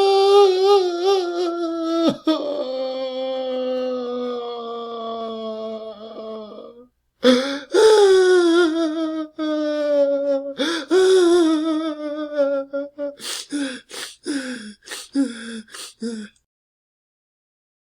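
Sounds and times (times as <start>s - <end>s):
man crying: 0.0s - 16.3s
gasping breath: 7.2s - 8.5s, 10.5s - 11.9s, 12.9s - 16.4s.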